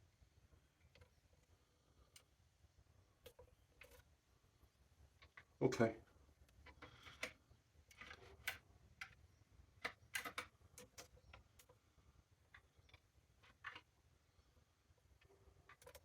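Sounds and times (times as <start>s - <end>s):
faint clicks and taps of tool parts: 5.2s - 5.6s, 6.4s - 9.2s, 9.8s - 11.8s, 15.2s - 16.0s.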